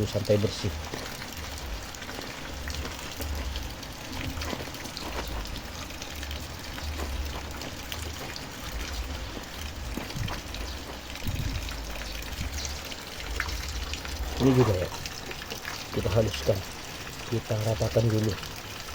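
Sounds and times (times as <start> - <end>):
rain falling: 0.0 - 18.9
raindrops ticking: 0.0 - 18.9
low rumble: 1.6 - 14.4.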